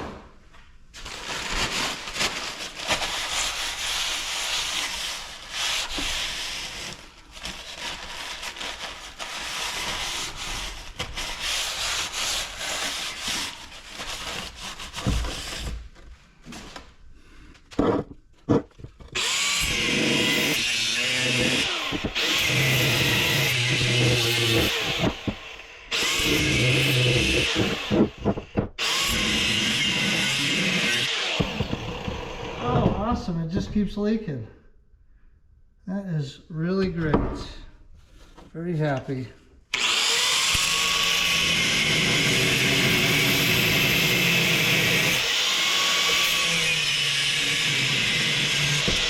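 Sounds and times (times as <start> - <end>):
power tool cutting steel: 19.2 - 32.7, 39.7 - 49.0.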